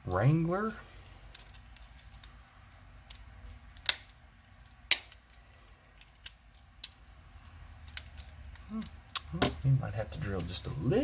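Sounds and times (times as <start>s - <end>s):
toy car body clicks and snaps: 3.0s - 5.4s, 6.0s - 9.5s.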